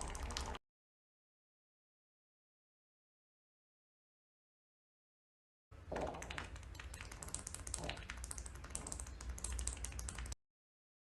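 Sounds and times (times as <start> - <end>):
bubbly fart sound effect: 5.9 - 6.5.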